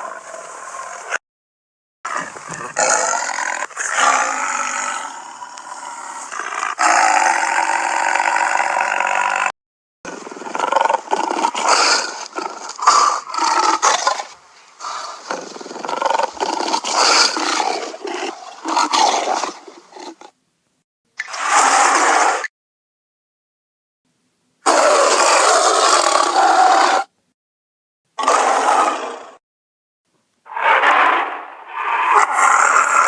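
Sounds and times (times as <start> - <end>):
tiger growling: 2.1 - 9.5, 10.1 - 20.4, 30.5 - 33.0
tiger roaring: 2.1 - 9.5, 10.1 - 20.4, 24.6 - 27.1, 28.2 - 29.4, 30.5 - 33.0.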